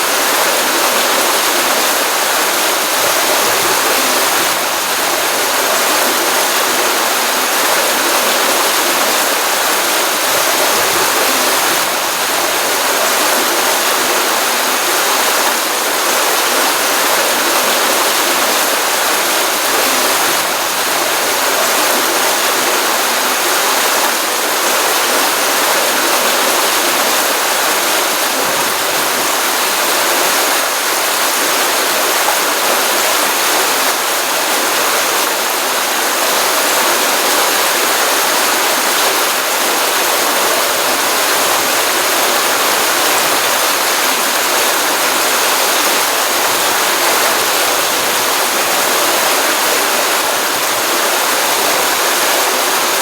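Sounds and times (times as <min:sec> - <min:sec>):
stream water rushing: 0:00.0 - 0:53.0.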